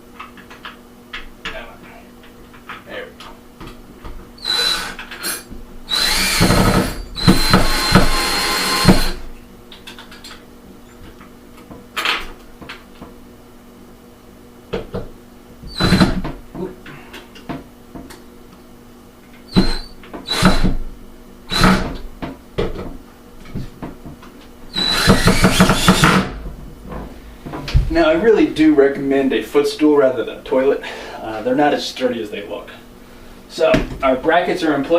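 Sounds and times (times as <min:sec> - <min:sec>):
cordless drill motor whining: 0:04.4 - 0:09.2, 0:19.5 - 0:20.7, 0:24.7 - 0:26.3
handling knocks: 0:26.0 - 0:28.4.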